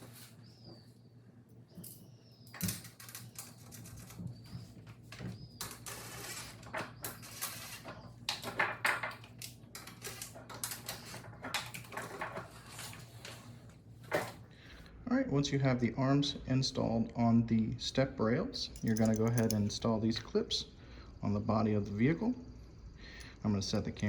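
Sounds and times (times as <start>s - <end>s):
hand tools clicking and knocking: 18.7s - 19.7s.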